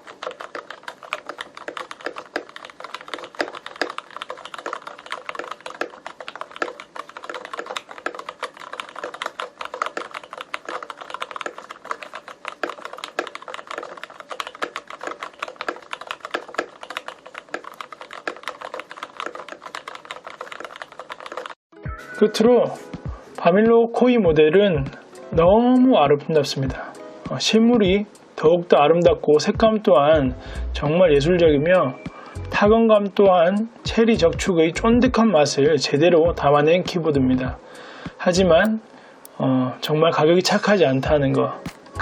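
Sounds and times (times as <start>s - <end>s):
fast typing on mechanical keyboard: 0.0s - 21.6s.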